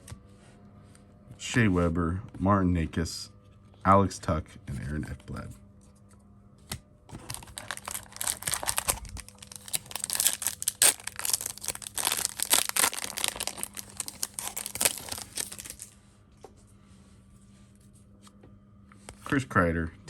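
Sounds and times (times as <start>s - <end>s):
wrapper crinkling and tearing: 7.1s - 15.9s.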